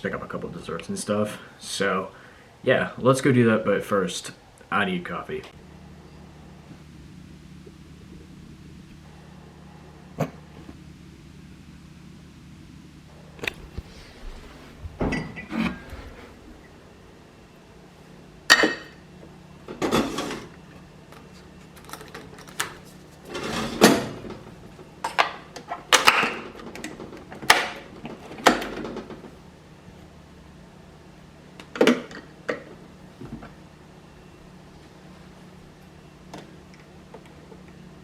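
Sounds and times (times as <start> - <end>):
faint steady hum: 1.3 - 23.5.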